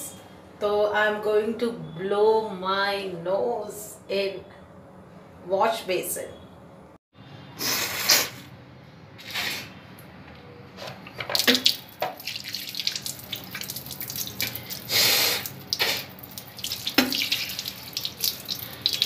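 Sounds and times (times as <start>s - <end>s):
person blowing nose forcefully: 14.9s - 16.1s
tap running into sink: 16.6s - 17.6s.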